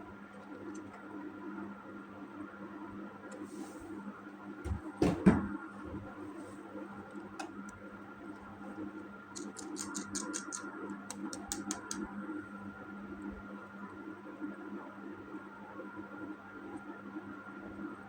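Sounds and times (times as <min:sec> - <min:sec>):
faint hum: 0:00.0 - 0:18.0
plastic toy pieces knocking: 0:09.4 - 0:12.0.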